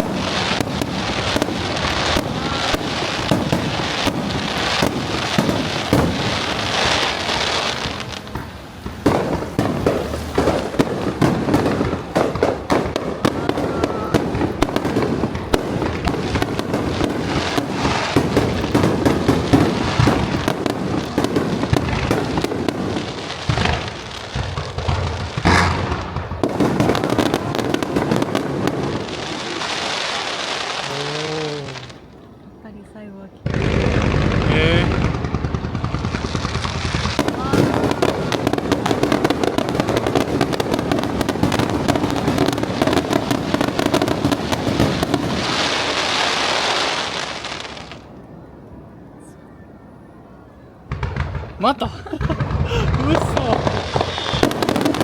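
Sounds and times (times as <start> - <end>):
fireworks bursting and crackling: 0.0 - 49.3, 50.8 - 55.0.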